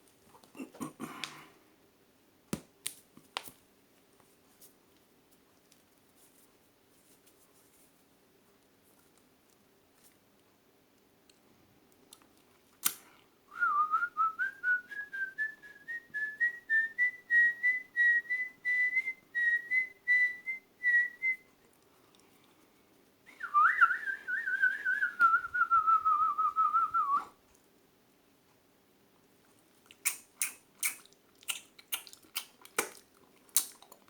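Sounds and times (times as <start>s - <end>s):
person whistling birdsong: 23.3s - 27.3s.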